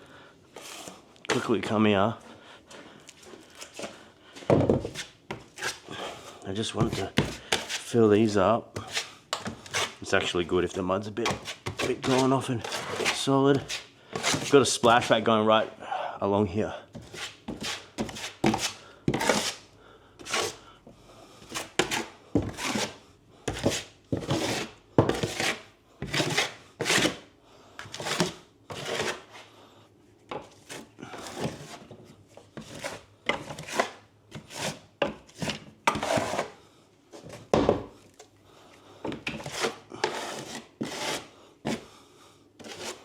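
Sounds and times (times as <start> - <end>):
drywall knife scraping a wall: 0.6 - 1.7, 4.8 - 8.1, 8.8 - 15.3, 16.9 - 20.6, 21.4 - 29.5, 30.4 - 36.6, 39.1 - 42.0, 42.6 - 43.0.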